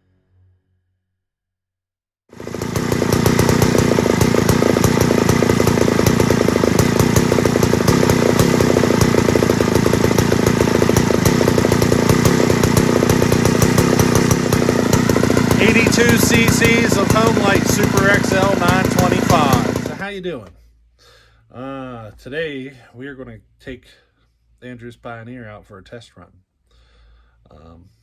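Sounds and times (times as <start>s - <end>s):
two-stroke chainsaw engine: 2.3s - 20.1s.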